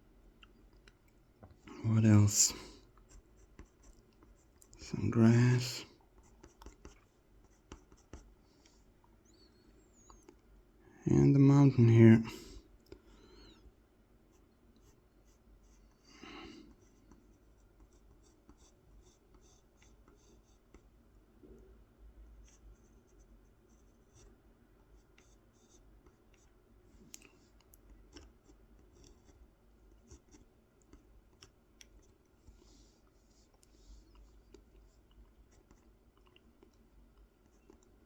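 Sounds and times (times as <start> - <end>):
pencil scratching on wood: 3.0 - 8.8, 16.7 - 20.9, 22.4 - 26.5, 27.9 - 31.1.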